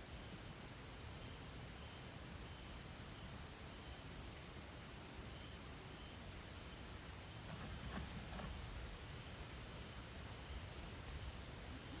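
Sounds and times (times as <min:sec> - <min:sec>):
faint steady hiss: 0:00.0 - 0:12.0
faint rustle: 0:07.3 - 0:09.0.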